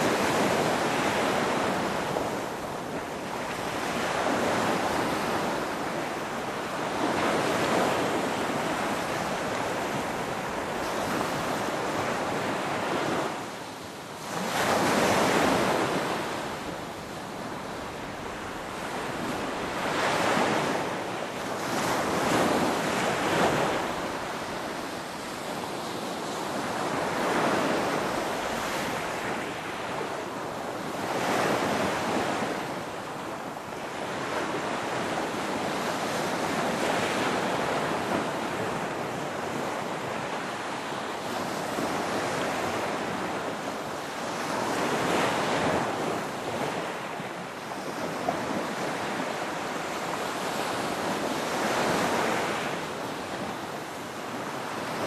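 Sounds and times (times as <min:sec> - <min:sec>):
ocean waves breaking on shore: 0:00.0 - 0:55.0.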